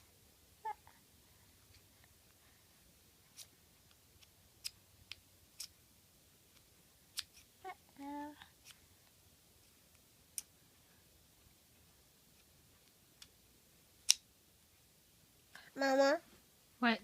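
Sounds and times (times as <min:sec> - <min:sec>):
baby's voice: 0:00.6 - 0:01.0, 0:07.7 - 0:08.4, 0:15.6 - 0:16.3.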